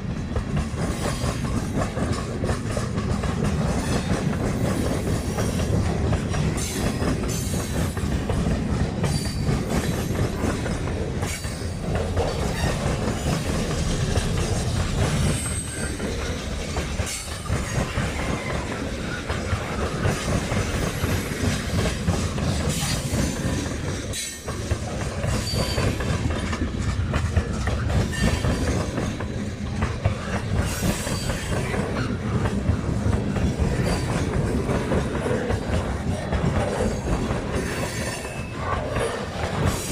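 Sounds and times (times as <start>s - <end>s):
train wheels clacking over rail joints: 0.0s - 39.9s
high wheel squeals: 25.3s - 26.0s.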